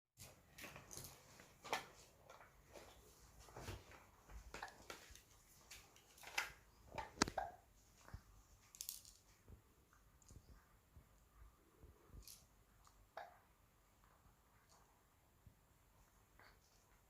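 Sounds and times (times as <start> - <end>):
small clicks and taps: 4.5 - 8.2.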